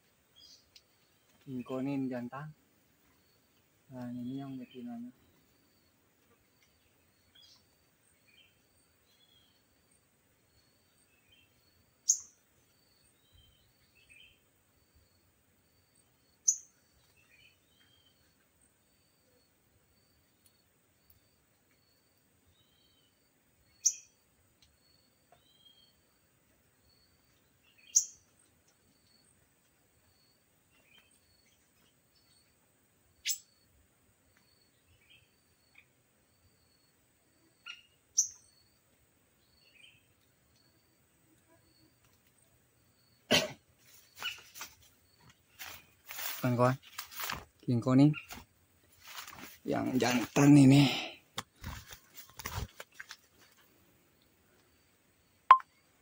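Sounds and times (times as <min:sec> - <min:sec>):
soft bird chirps: 0:00.0 - 0:09.7, 0:10.4 - 0:15.2, 0:16.0 - 0:26.2, 0:26.8 - 0:29.4, 0:30.0 - 0:32.6, 0:33.2 - 0:36.0, 0:37.6 - 0:38.8, 0:43.8 - 0:47.0
small birds calling: 0:03.0 - 0:09.6, 0:10.6 - 0:14.5, 0:26.8 - 0:29.3, 0:37.5 - 0:38.8, 0:43.0 - 0:47.0, 0:47.9 - 0:53.5.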